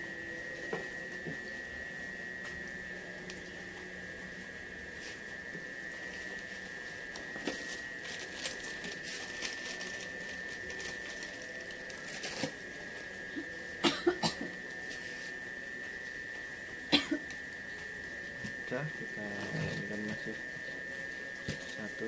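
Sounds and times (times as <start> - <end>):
thin high whine: 0.0 - 22.0
person coughing: 13.8 - 14.6, 16.9 - 17.3.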